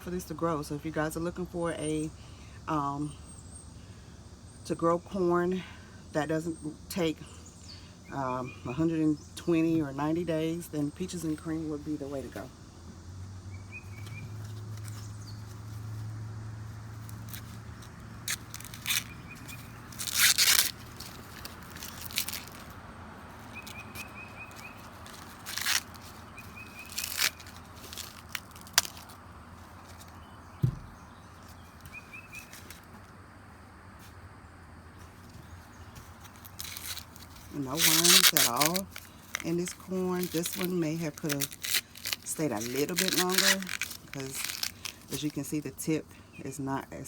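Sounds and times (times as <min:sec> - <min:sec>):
small bird chirping: 0:06.5 - 0:16.1, 0:16.7 - 0:33.0
corn husks ripping: 0:13.9 - 0:30.3, 0:35.0 - 0:45.9.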